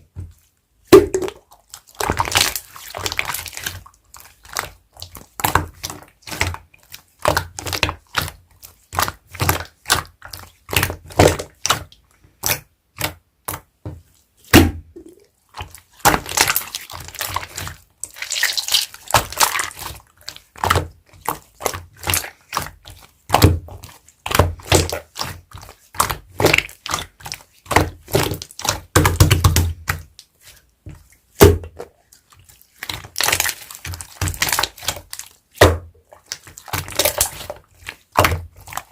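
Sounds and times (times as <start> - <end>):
slime squishing: 0.0 - 38.9.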